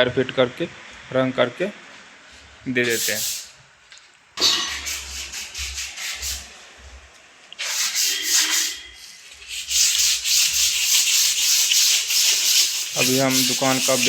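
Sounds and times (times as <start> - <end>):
rubbing strokes: 4.7 - 6.5, 7.6 - 14.0.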